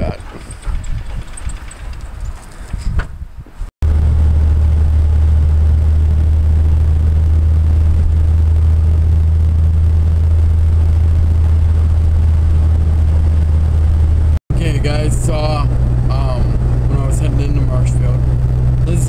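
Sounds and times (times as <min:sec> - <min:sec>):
car engine droning: 0:03.8 - 0:19.0.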